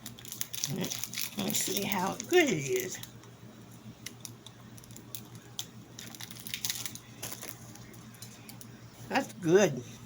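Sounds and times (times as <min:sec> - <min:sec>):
person chewing a crunchy bar: 0:00.0 - 0:01.8.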